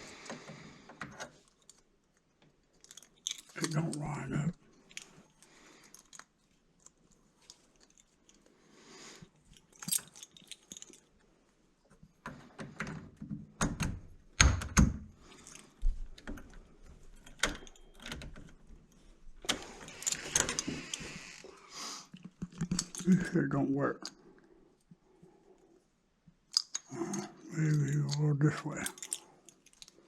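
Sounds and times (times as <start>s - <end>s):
keys jangling: 9.6s - 11.0s, 28.8s - 30.0s
metal lock hardware clicking: 9.7s - 11.0s, 16.2s - 18.6s, 28.8s - 30.0s.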